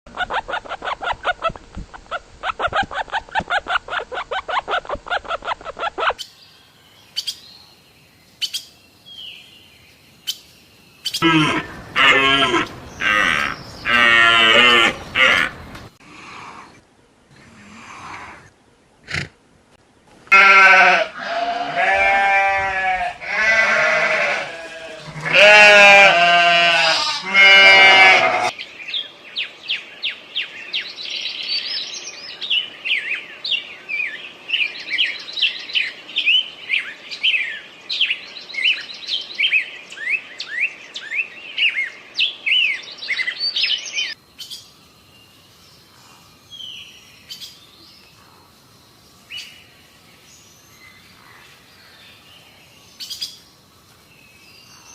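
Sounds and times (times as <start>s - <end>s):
bleat-like animal screams: 11.2s - 15.5s, 20.3s - 28.5s.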